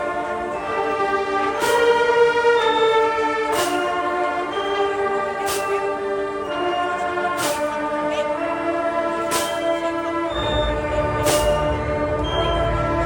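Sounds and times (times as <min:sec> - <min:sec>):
marching band playing chords: 0:09.0 - 0:13.0
cymbal crash: 0:10.3 - 0:13.0.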